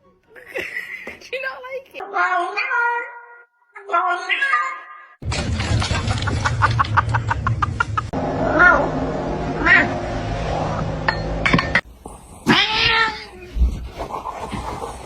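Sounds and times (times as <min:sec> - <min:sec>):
cat meowing: 0:12.4 - 0:13.6.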